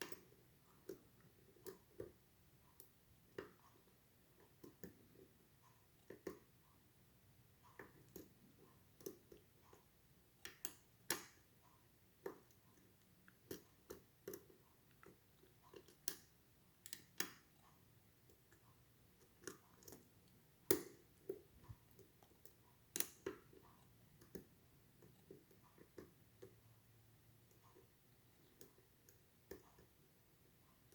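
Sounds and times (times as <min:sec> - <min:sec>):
lock pick clicks and taps: 0:10.4 - 0:11.4, 0:15.8 - 0:17.4, 0:22.9 - 0:23.5.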